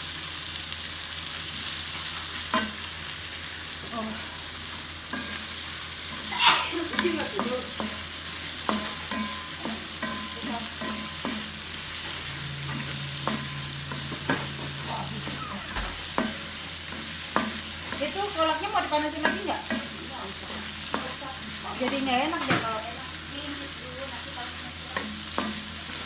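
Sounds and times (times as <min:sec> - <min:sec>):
food sizzling in a pan: 0:00.0 - 0:26.0
spatula scraping a pan: 0:04.2 - 0:23.1.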